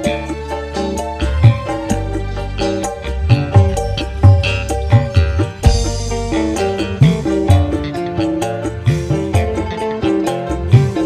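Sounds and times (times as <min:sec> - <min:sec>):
live band music: 0:00.0 - 0:11.0
low pitch-bending drum strokes: 0:01.5 - 0:09.8.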